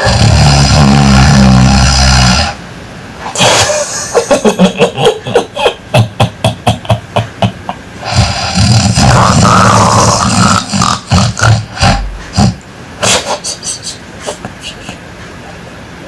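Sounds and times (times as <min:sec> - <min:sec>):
loud snore: 0:00.0 - 0:02.6, 0:08.0 - 0:12.6
man laughing: 0:03.3 - 0:08.0, 0:13.0 - 0:15.2.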